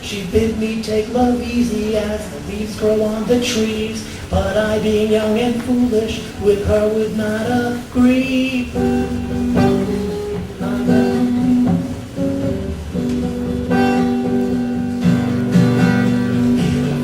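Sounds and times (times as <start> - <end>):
acoustic guitar chords: 0.0 - 17.0.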